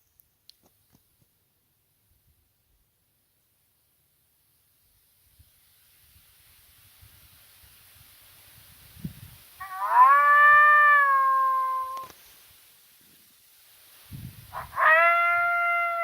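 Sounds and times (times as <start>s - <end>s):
howl-like hunting call: 9.6s - 12.1s, 14.5s - 16.0s.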